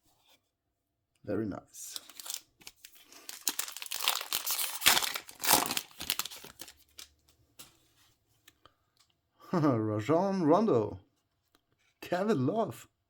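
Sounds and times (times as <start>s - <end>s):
wrapper crinkling and tearing: 1.9s - 7.1s.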